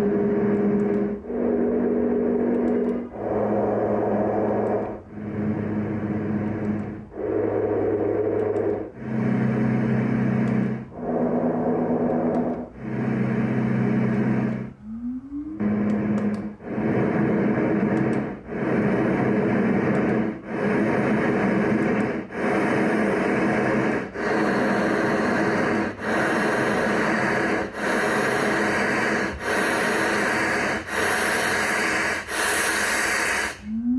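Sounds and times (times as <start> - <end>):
noise machine hiss and hum: 15.6 - 33.8.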